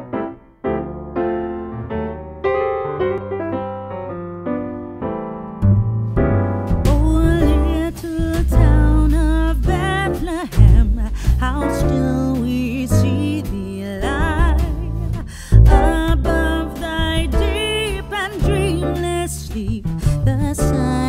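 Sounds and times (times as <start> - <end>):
electric piano chords: 0.0 - 19.6
heavy bass and beat: 6.7 - 12.2, 12.9 - 19.0
person singing: 6.9 - 21.0.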